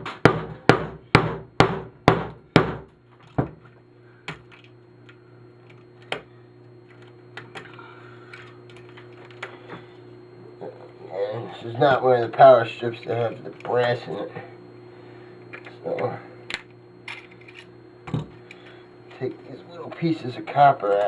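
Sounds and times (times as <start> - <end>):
hammer strikes on aluminum: 0.0 - 2.9.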